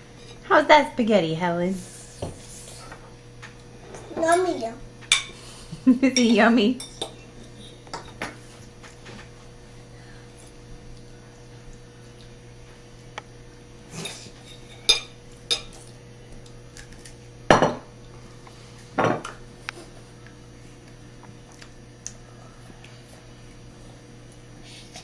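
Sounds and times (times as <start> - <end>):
steady low hum: 0.0 - 25.0
dishes and cutlery clinking: 6.1 - 8.4, 13.9 - 15.9.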